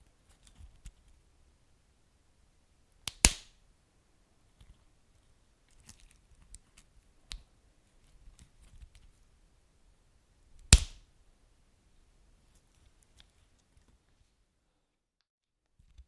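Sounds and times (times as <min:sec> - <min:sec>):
wood fire crackling and popping: 0:10.7 - 0:11.0.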